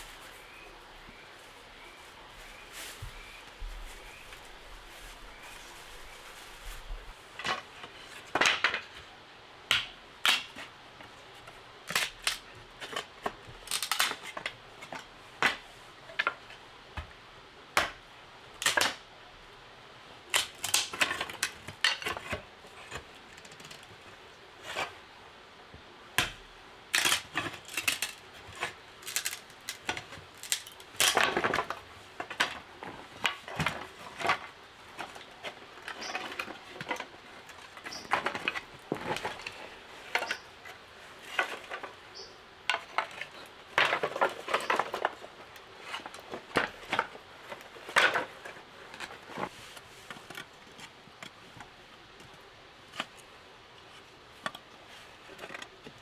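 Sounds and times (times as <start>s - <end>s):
faint steady hiss: 0.0s - 56.0s
clicks and knocks of hard objects: 7.4s - 9.1s, 9.7s - 17.1s, 18.6s - 19.1s, 20.3s - 24.1s, 26.2s - 53.3s.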